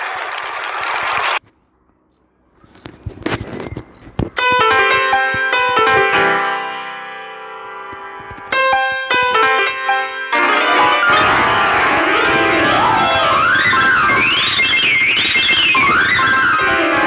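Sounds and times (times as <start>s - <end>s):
keyboard playing runs and chords: 4.2s - 17.0s.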